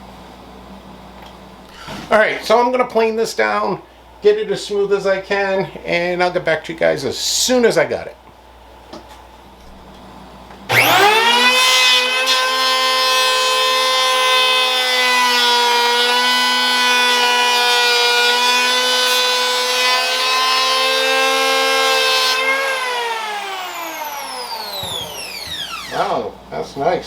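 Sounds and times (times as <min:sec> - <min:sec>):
electric hand planer whining: 0:10.7 - 0:26.2
planer cutting wooden board: 0:10.7 - 0:26.2.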